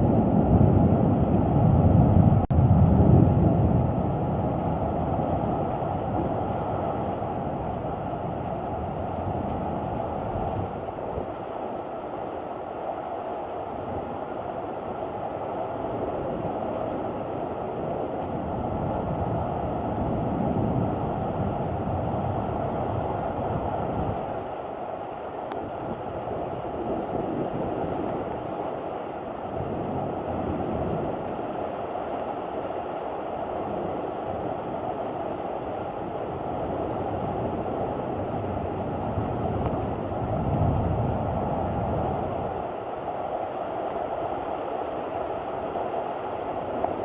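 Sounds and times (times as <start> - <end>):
thunder rumbles: 0.0 - 11.4
heavy rain: 0.0 - 47.0
wind: 0.0 - 47.0.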